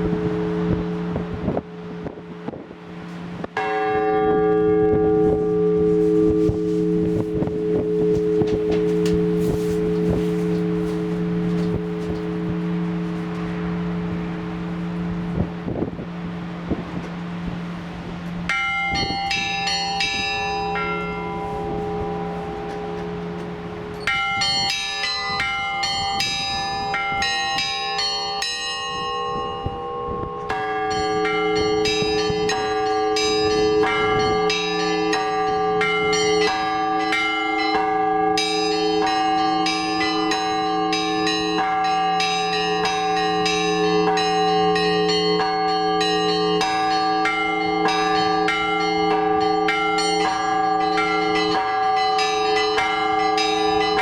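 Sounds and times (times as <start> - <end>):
large low bells ringing: 0.0 - 54.0
small high bells striking: 18.5 - 54.0.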